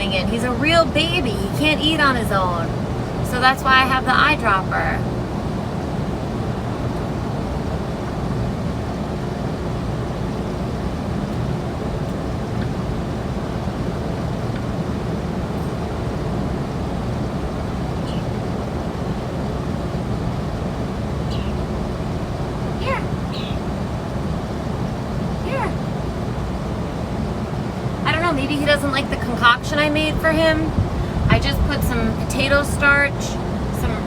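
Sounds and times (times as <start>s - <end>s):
city traffic rumble: 0.0s - 34.0s
faint high chirps: 18.0s - 18.5s, 21.2s - 21.7s, 22.8s - 23.7s.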